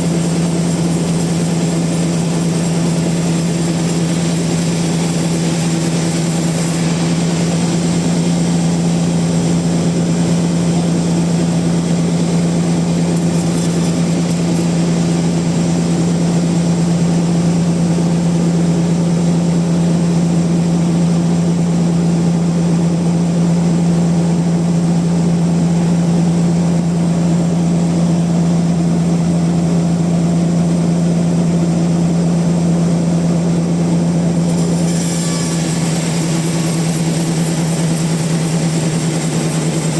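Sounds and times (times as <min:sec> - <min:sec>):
bandsaw mill humming: 0:00.0 - 0:16.6, 0:34.4 - 0:39.9.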